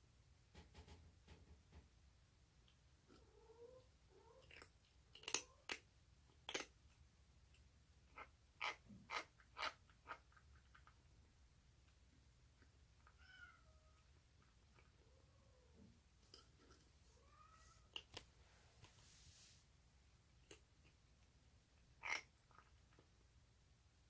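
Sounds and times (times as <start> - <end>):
kitten crunching food: 4.3 - 7.6, 17.9 - 18.3, 20.3 - 21.2, 22.0 - 23.1.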